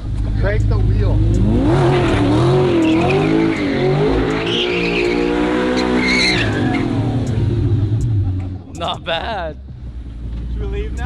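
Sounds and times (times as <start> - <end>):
car engine revving: 0.0 - 11.0
tyres squealing: 1.2 - 7.2.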